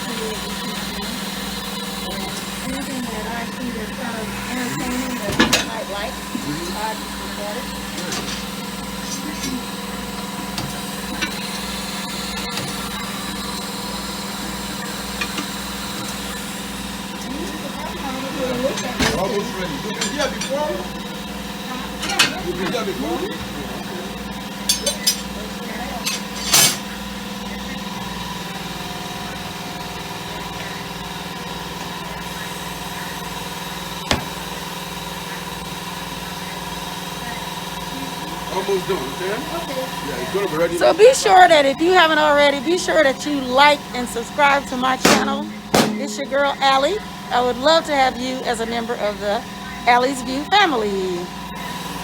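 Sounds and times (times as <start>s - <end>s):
mechanical hum: 0.0s - 52.0s.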